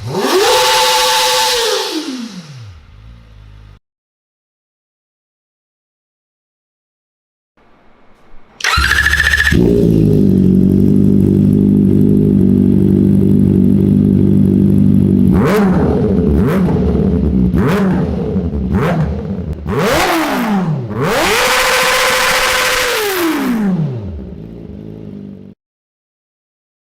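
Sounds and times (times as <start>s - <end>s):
motorcycle engine idling and revving: 0.0s - 3.8s, 8.6s - 25.6s
motorcycle starter cranking: 8.4s - 10.1s.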